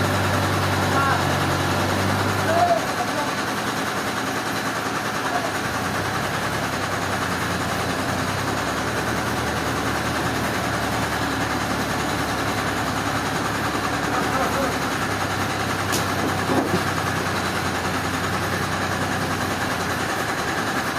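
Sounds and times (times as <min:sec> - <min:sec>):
engine running steadily: 0:00.0 - 0:20.9
machine noise: 0:00.0 - 0:20.9.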